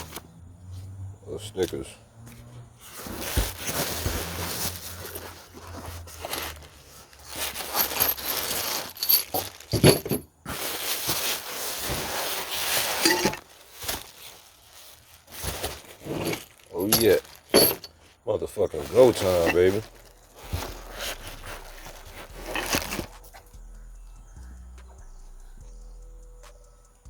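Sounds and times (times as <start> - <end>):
packaging rustling and tearing: 2.9 - 23.5.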